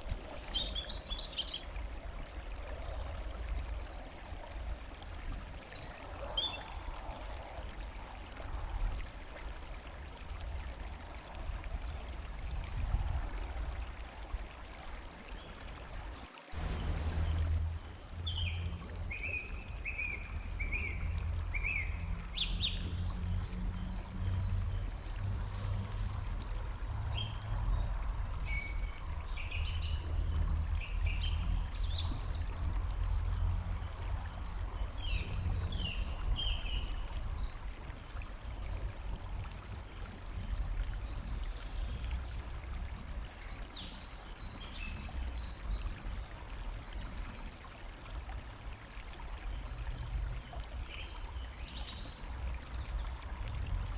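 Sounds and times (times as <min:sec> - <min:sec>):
trickle of running water: 0:00.0 - 0:53.9
birds chirping and whistling: 0:16.6 - 0:26.2
low rumble: 0:16.6 - 0:37.1.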